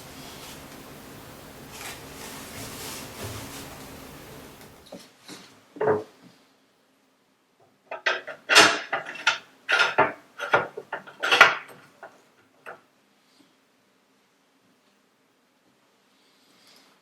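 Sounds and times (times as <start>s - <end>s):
metal parts clinking together: 7.9s - 11.9s.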